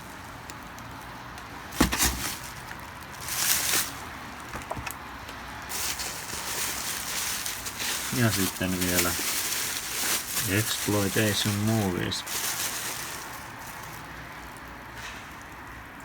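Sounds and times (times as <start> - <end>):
sharp knocks of books: 1.8 - 2.6, 4.5 - 5.0.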